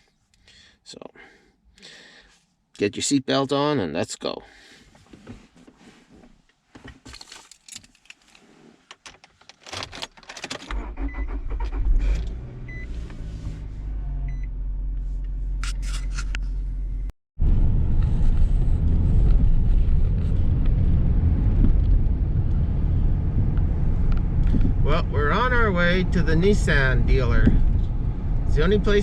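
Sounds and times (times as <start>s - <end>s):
car engine and road noise: 6.2s - 29.0s
handling clicks and rattles: 6.9s - 10.8s
car engine starting and idling: 10.4s - 29.0s.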